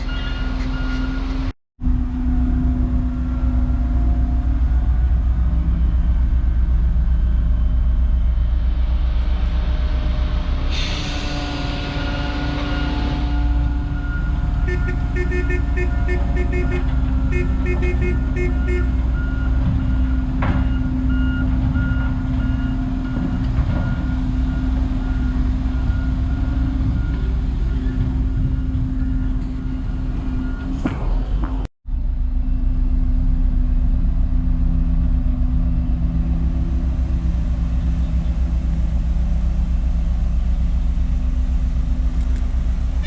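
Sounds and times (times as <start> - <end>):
reversing alarm beeping: 0.0 - 1.4, 12.6 - 30.9
diesel machinery running: 0.0 - 43.0
hiss of air: 10.6 - 12.1.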